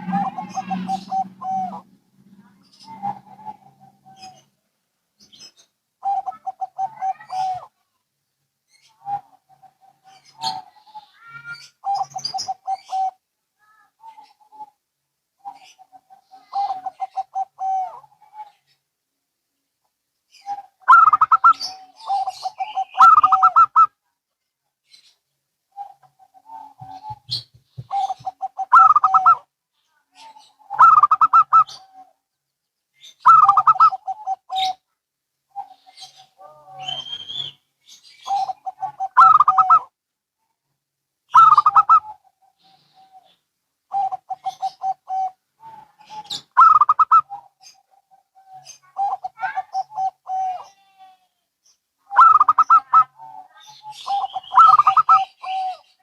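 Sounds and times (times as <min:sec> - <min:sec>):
doves cooing: 0:00.0 - 0:04.5, 0:06.0 - 0:07.7, 0:08.9 - 0:13.2, 0:15.4 - 0:18.5, 0:20.4 - 0:24.0, 0:25.7 - 0:29.5, 0:30.6 - 0:32.2, 0:33.2 - 0:34.8, 0:38.2 - 0:39.9, 0:41.3 - 0:50.8, 0:52.1 - 0:56.0.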